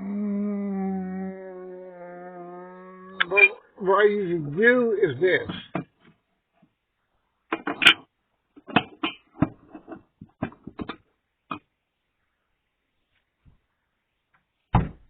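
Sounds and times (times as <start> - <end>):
kitchen items knocking and clattering: 7.5 - 11.0.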